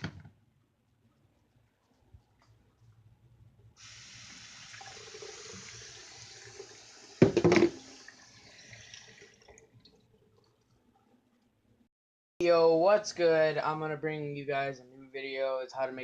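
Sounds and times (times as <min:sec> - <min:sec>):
tap water running: 0:03.8 - 0:10.7.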